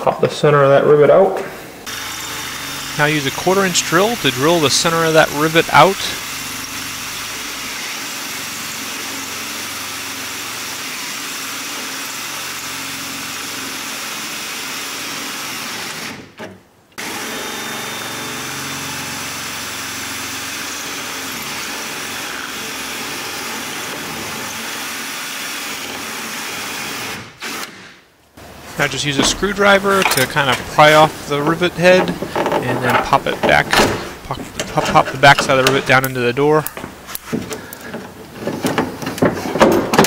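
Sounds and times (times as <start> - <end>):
electric drill drilling: 1.9 - 16.3, 17.0 - 27.9.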